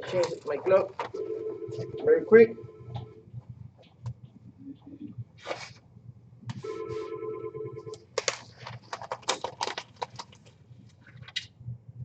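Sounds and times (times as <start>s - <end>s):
glove material crackling and rustling: 8.1s - 11.3s.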